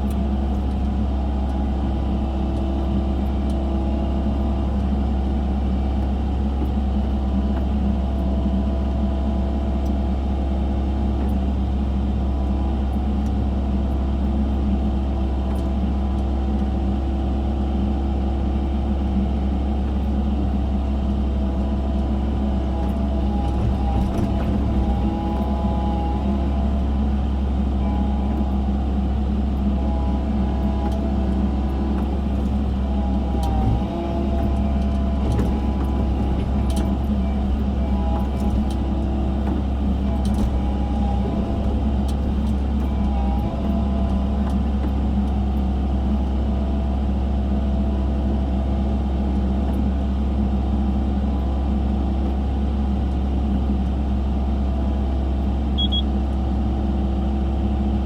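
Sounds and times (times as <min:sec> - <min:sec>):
excavator diesel engine: 0:00.0 - 0:58.0
hydraulic whine: 0:22.3 - 0:27.2, 0:29.6 - 0:45.0.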